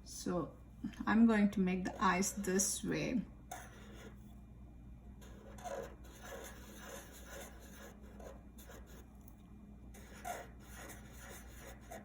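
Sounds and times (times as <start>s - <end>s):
faint low hum: 0.0s - 12.0s
pencil scratching on paper: 3.5s - 4.2s, 5.2s - 9.1s, 9.9s - 12.0s.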